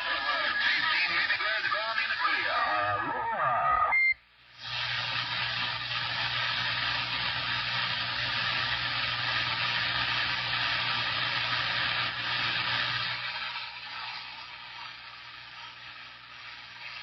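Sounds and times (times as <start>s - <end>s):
radio static hiss: 0.0s - 13.3s.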